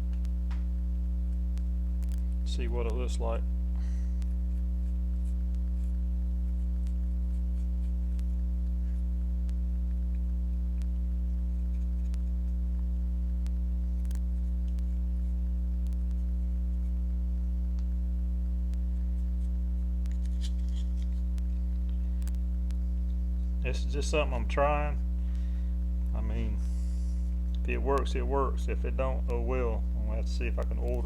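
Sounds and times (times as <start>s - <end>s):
electrical mains hum: 0.0s - 31.0s
hands scratching on small part: 4.3s - 9.1s, 18.8s - 21.7s.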